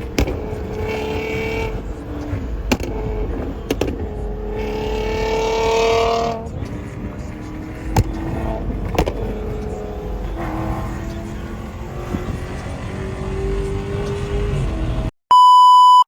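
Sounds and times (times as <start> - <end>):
car engine running: 0.0 - 15.1.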